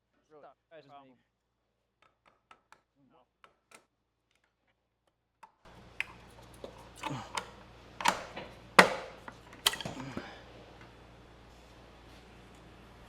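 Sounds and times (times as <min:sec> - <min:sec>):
tool prying at valve cover: 0:06.0 - 0:10.0.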